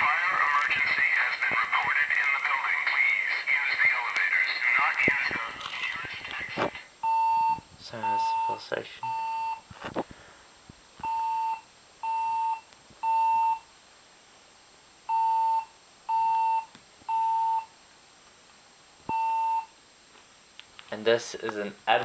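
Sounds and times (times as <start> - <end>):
fire alarm beeps: 7.0 - 9.6, 11.0 - 13.6, 15.1 - 17.7, 19.1 - 19.7.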